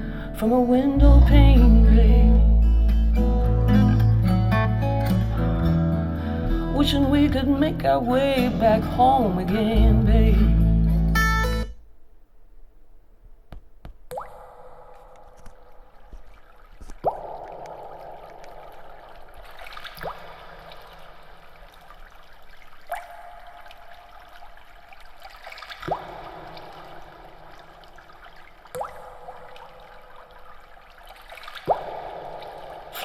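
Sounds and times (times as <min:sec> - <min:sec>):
water trickling: 0:14.1 - 0:33.0.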